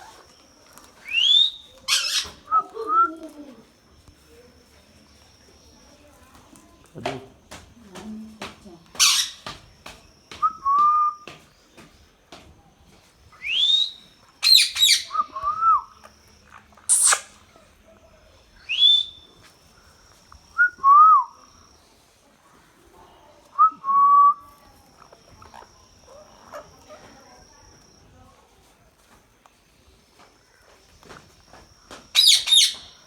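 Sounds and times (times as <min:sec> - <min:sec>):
parrot calling: 0:01.0 - 0:03.0, 0:09.0 - 0:09.4, 0:13.4 - 0:15.6, 0:16.5 - 0:17.5, 0:32.2 - 0:32.9
parrot slurred whistles: 0:16.9 - 0:17.3.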